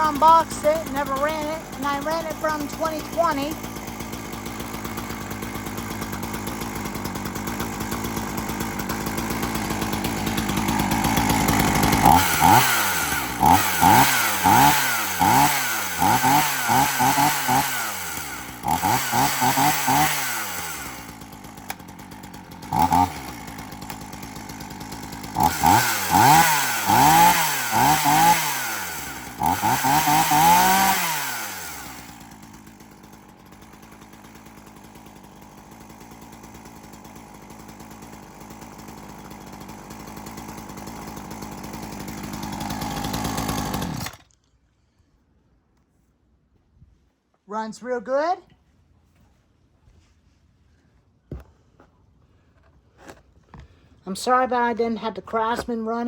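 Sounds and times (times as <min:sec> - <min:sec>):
chainsaw engine revving: 0:00.0 - 0:44.4.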